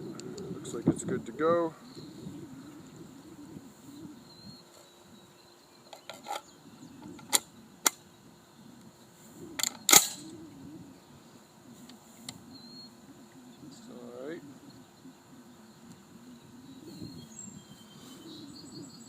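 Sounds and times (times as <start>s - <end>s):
sharp clicks: 9.6s - 10.3s
shotgun shot: 9.9s - 10.2s.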